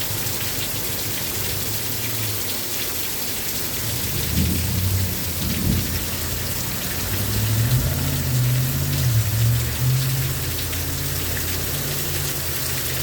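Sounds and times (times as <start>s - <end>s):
heavy rain pouring: 0.0s - 13.0s
thunder rumbling: 3.8s - 10.6s.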